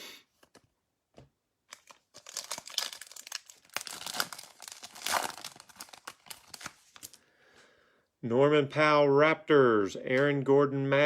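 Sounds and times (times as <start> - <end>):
plastic wrapper crinkling and tearing: 1.7 - 7.2.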